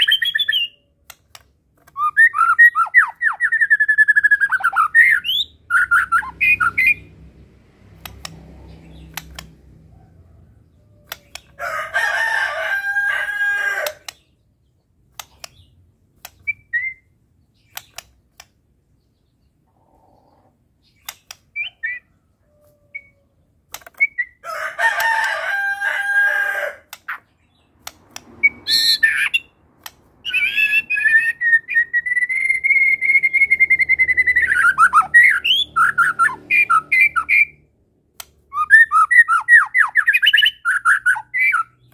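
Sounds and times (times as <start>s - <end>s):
bird singing whistles: 0.0s - 0.8s, 2.0s - 7.1s, 16.4s - 17.2s, 28.4s - 29.5s, 30.2s - 37.6s, 38.5s - 41.9s
harsh rasping bird calls: 0.0s - 7.3s, 22.9s - 37.6s.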